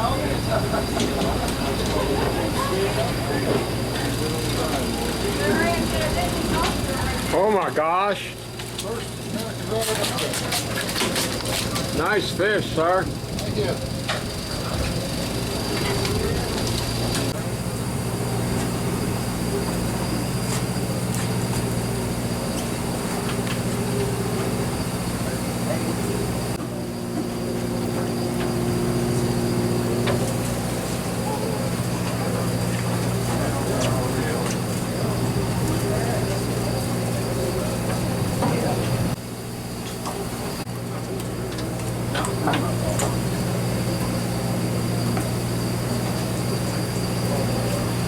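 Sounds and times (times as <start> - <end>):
boat engine humming: 0.0 - 48.0
thin high whine: 11.1 - 40.8.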